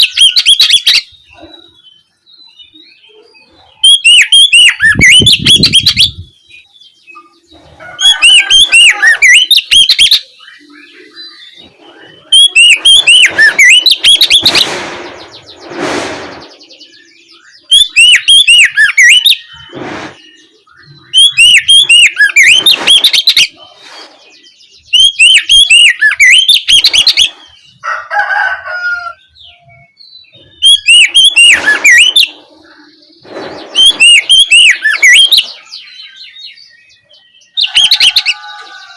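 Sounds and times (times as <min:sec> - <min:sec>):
bird singing rapid high whistles: 0:12.2 - 0:14.7, 0:16.9 - 0:19.7, 0:20.8 - 0:23.5, 0:24.9 - 0:27.2, 0:30.6 - 0:32.3, 0:33.7 - 0:35.5.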